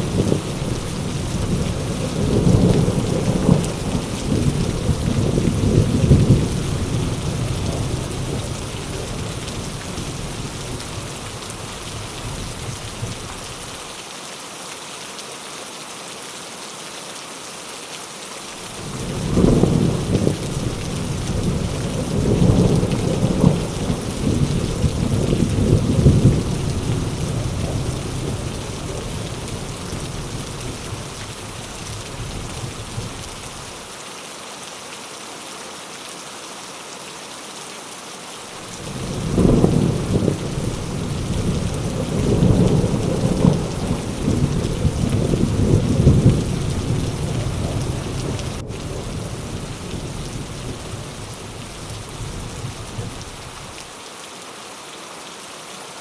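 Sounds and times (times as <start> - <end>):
rolling thunder: 0.0 - 13.5, 18.7 - 33.5, 38.6 - 53.6
heavy rain falling: 0.0 - 56.0.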